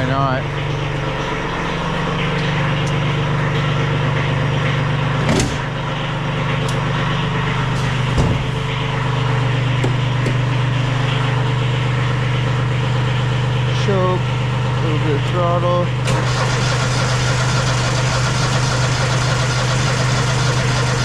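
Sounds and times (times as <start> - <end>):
engine idling: 0.0 - 21.0.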